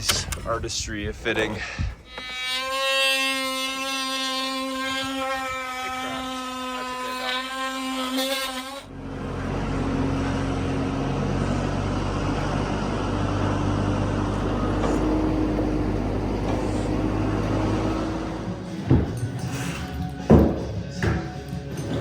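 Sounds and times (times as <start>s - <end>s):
road noise: 8.8s - 22.0s
vehicle engine hum: 8.8s - 22.0s.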